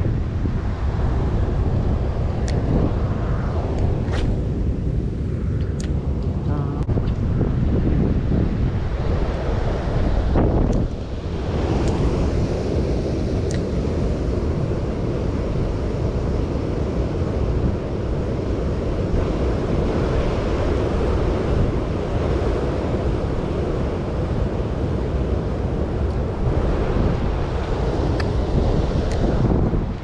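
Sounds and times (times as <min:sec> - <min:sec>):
wind buffeting microphone: 0:00.0 - 0:30.0
water rushing from spillway: 0:08.8 - 0:30.0.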